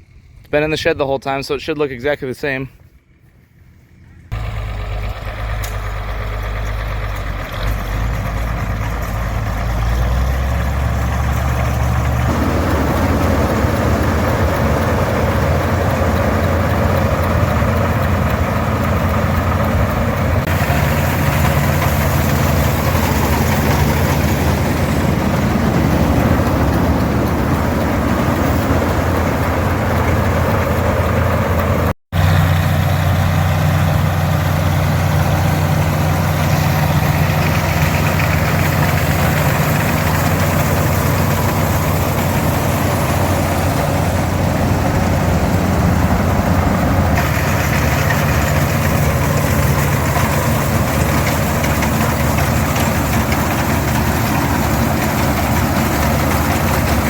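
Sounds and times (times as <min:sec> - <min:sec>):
vehicle engine running: 0:02.8 - 0:57.0.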